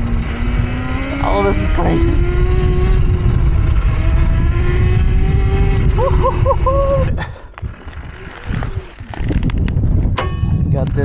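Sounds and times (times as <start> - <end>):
wind and road rumble: 0.0 - 11.0
electric motor whine: 7.5 - 9.8.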